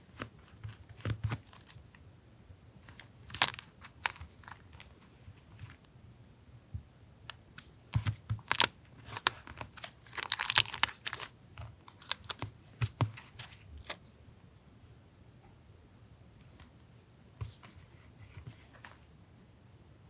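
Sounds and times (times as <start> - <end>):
paper crinkling: 2.8 - 5.8, 8.0 - 14.0.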